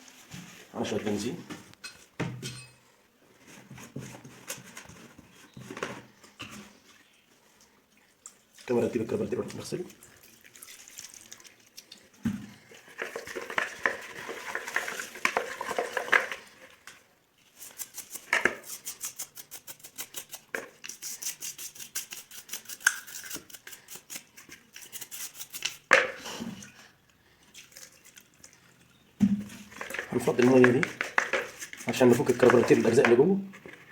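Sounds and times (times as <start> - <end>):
scrubbing strokes: 6.8 - 12.2, 17.4 - 25.9
petrol sloshing: 27.5 - 33.9.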